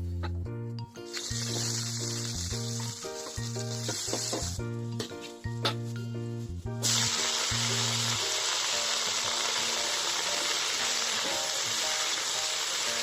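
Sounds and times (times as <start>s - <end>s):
food sizzling in hot oil: 1.1s - 4.6s, 6.8s - 13.0s.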